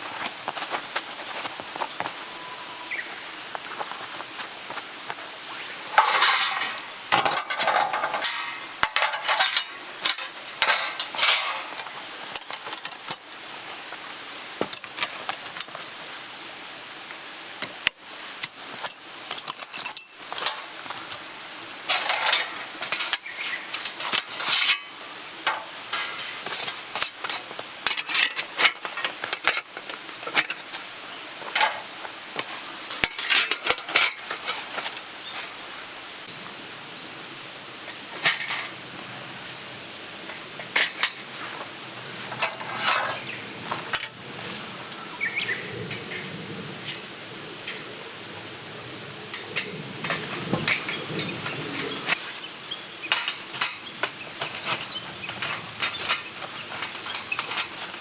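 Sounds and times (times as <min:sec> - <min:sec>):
rustling: 0:00.0 - 0:16.4, 0:18.2 - 0:35.9, 0:53.1 - 0:58.0
metal gear clinking and scraping: 0:05.9 - 0:13.8, 0:14.7 - 0:16.2, 0:18.4 - 0:21.3, 0:21.9 - 0:30.7, 0:42.3 - 0:44.2, 0:53.1 - 0:58.0.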